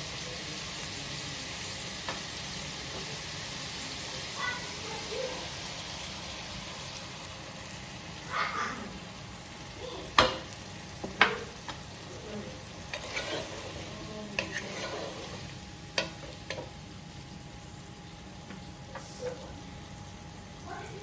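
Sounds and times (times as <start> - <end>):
curry sizzling in a pot: 0.0 - 21.0
spoon knocking against pot: 10.2 - 11.8.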